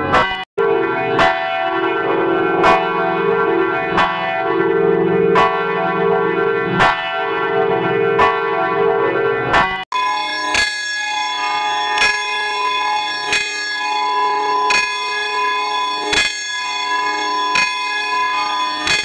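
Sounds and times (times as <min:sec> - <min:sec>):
church bell tolling: 0:00.0 - 0:19.0
different bell sound: 0:09.9 - 0:19.0.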